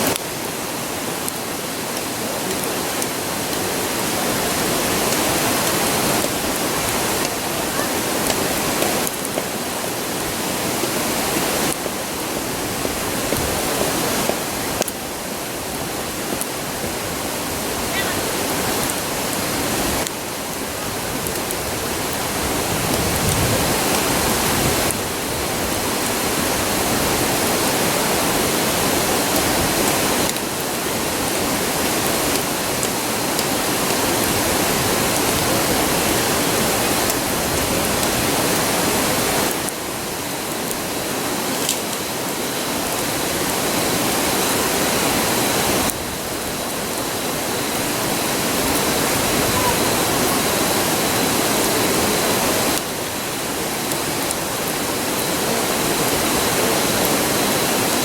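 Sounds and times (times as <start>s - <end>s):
river rushing roar: 0.0s - 58.0s.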